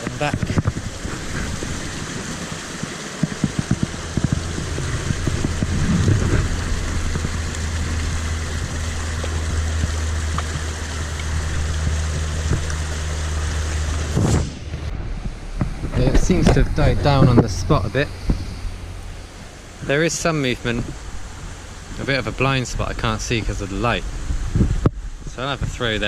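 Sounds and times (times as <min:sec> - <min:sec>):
splashes and knocks: 0:00.0 - 0:19.9
flowing river water: 0:00.0 - 0:26.0
steady low hum: 0:00.0 - 0:26.0.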